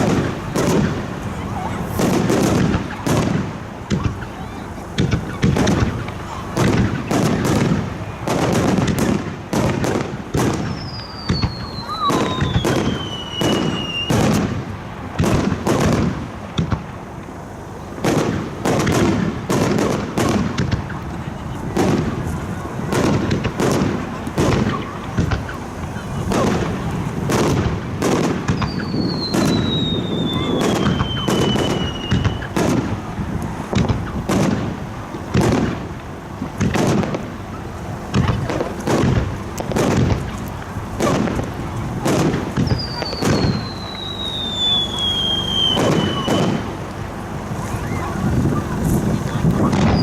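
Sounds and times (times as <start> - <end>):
fireworks bursting: 0.0 - 50.0
descending firework whistle: 9.9 - 14.6, 24.3 - 32.9, 42.0 - 46.8, 49.4 - 50.0.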